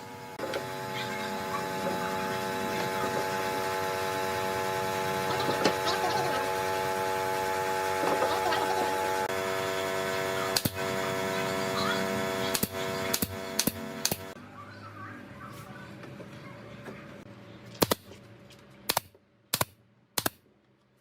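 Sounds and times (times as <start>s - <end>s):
mechanical hum: 0.0s - 21.0s
sharp clicks: 12.5s - 14.4s.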